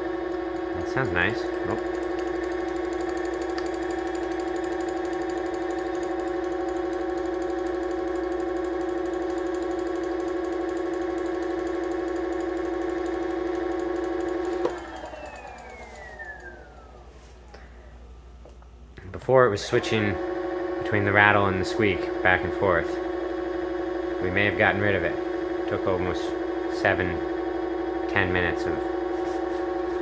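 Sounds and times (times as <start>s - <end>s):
hub motor hum: 0.0s - 17.7s, 19.3s - 30.0s
click: 3.4s - 3.8s, 14.6s - 14.8s.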